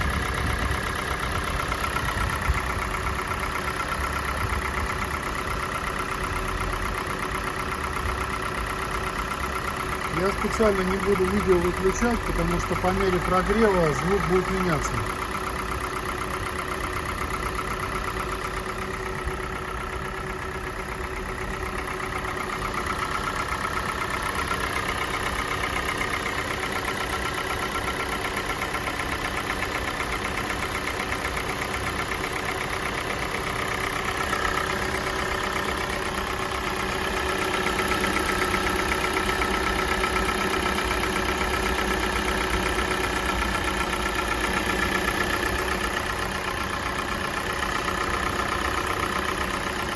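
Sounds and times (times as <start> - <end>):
car engine idling: 0.0 - 49.9.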